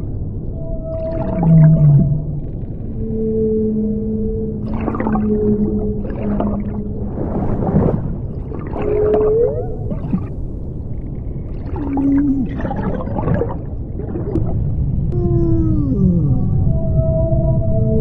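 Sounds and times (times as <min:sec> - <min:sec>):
low rumble: 0:00.0 - 0:18.0
slow gliding tones: 0:00.0 - 0:18.0
crackling gurgling noise: 0:00.9 - 0:03.0, 0:04.5 - 0:15.3.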